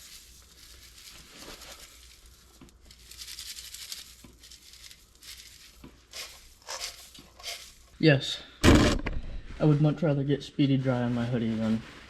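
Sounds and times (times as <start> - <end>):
granules scattering: 0.0 - 8.0.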